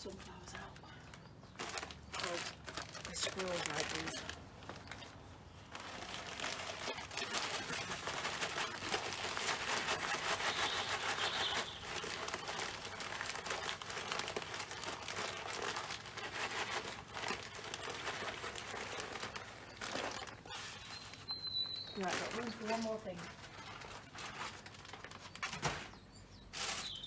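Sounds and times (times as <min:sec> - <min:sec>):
plastic bag crinkling: 0:00.0 - 0:27.0.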